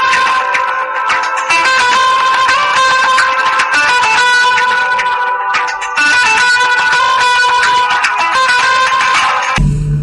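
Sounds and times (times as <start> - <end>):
plucked guitar ringtone melody: 0.0 - 9.6.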